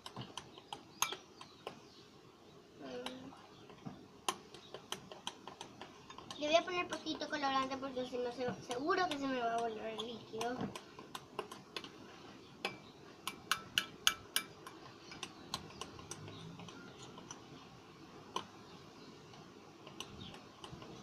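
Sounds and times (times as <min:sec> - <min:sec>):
utensil clicking against bowl: 0:00.0 - 0:01.8, 0:03.0 - 0:07.8, 0:08.7 - 0:12.0, 0:12.6 - 0:17.5, 0:18.3 - 0:18.5, 0:19.4 - 0:21.0.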